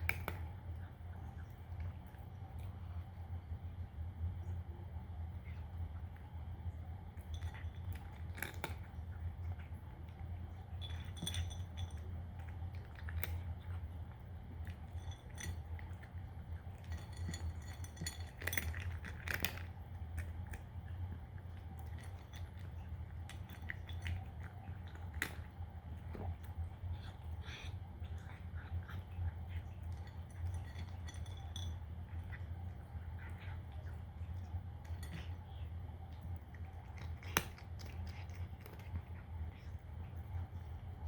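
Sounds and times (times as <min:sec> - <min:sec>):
cat crunching dry kibble: 0:00.0 - 0:03.9, 0:05.3 - 0:41.0
steady low hum: 0:00.0 - 0:41.0
clinks: 0:10.5 - 0:13.5, 0:14.6 - 0:20.6, 0:29.6 - 0:33.4.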